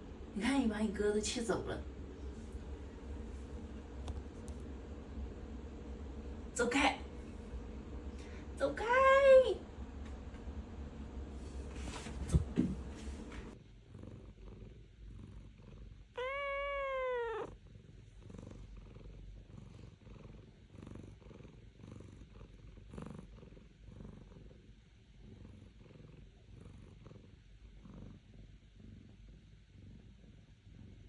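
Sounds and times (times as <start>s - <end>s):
cat purring: 0.4s - 31.0s
cat meowing: 16.2s - 17.5s.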